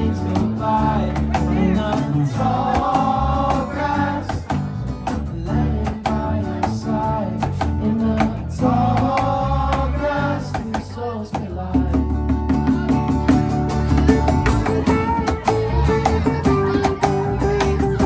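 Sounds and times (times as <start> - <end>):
drums beating: 10.6 - 18.0
live band playing: 11.9 - 18.0.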